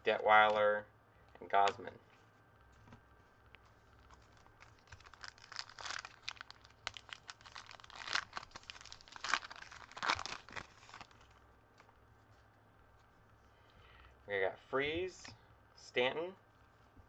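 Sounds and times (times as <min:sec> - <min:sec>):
foil wrapper tearing and crinkling: 0:04.0 - 0:11.3.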